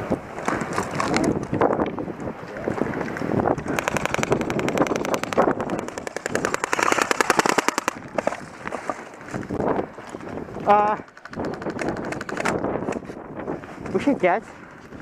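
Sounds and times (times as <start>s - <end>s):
wind on microphone: 0.0s - 15.0s
airsoft gun firing: 6.2s - 8.0s.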